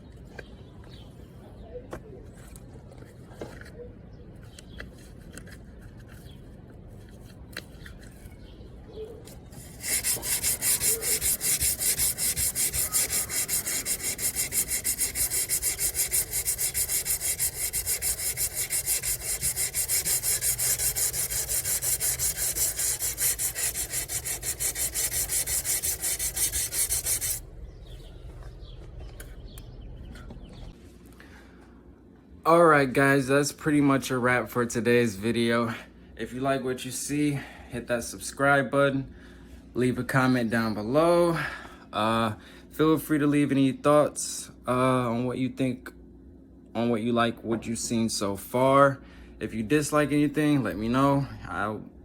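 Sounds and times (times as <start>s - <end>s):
sandpaper rasping on metal panel: 9.6s - 27.4s.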